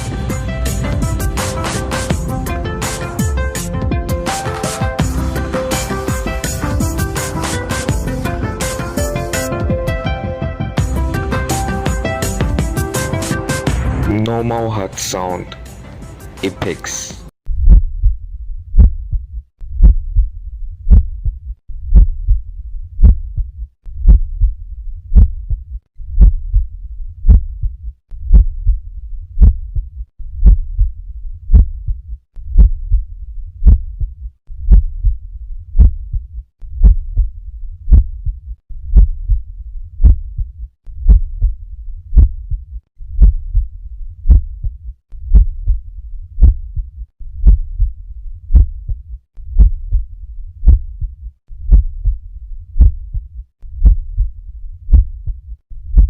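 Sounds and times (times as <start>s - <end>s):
faint low rumble: 17.5s - 56.0s
heartbeat through stethoscope: 17.5s - 56.0s.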